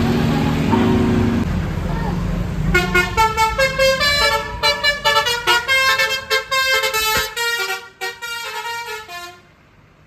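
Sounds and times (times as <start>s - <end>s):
bus musical horn tune: 2.7s - 9.6s.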